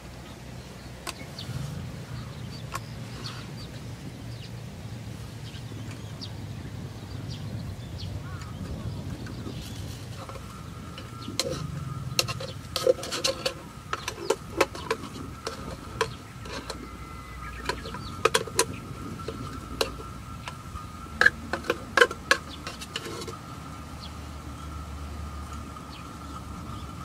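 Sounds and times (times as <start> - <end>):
fire popping and clicking: 8.4 - 16.9
faint steady high tone: 13.6 - 27.0.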